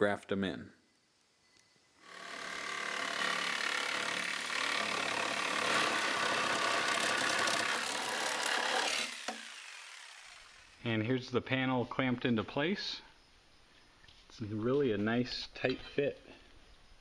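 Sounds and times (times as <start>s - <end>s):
power tool cutting sheet steel: 2.0s - 10.8s.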